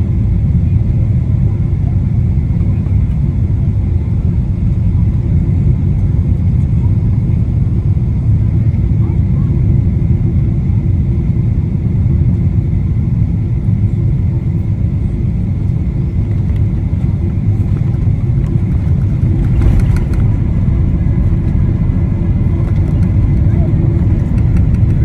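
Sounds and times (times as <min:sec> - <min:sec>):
vehicle low rumble: 0:14.6 - 0:25.0.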